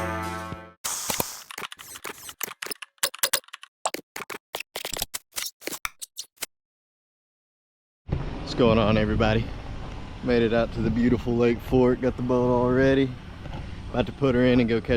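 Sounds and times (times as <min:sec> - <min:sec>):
music: 0:00.0 - 0:00.8
rapid sharp clicks: 0:00.9 - 0:04.7.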